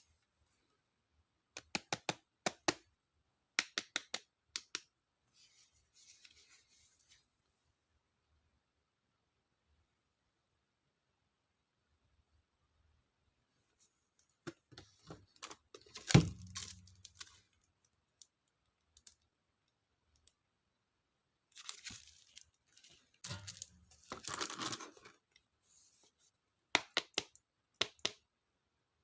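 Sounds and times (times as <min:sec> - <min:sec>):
paper and plastic rustling: 0:21.5 - 0:25.3.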